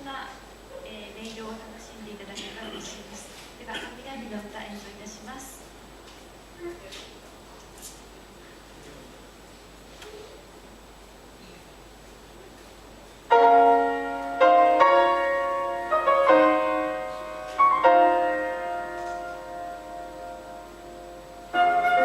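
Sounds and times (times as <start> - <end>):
piano playing slow chords: 13.3 - 22.0.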